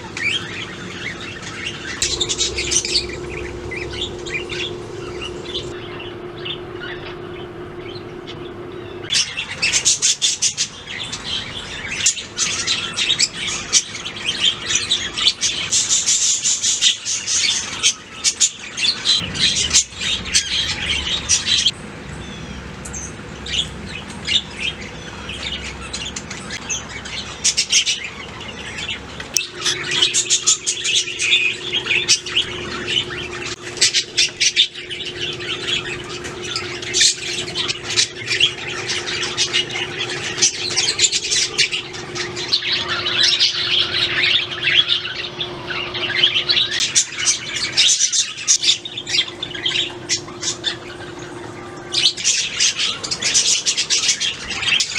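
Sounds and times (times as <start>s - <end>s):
low hum: 0.0s - 11.9s, 28.2s - 53.6s
budgerigars chirping: 0.0s - 54.9s.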